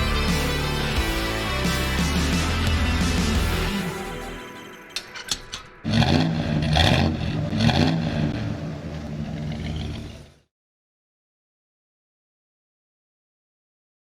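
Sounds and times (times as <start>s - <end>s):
engine revving: 5.8s - 10.5s.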